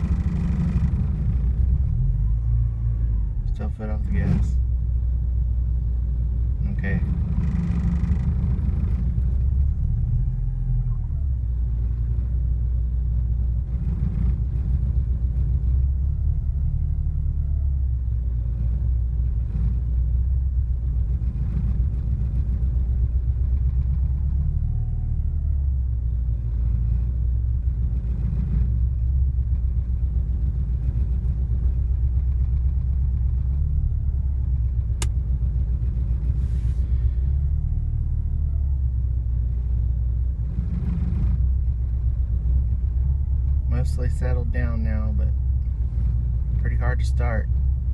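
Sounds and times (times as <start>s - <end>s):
car engine idling: 0.0s - 47.9s.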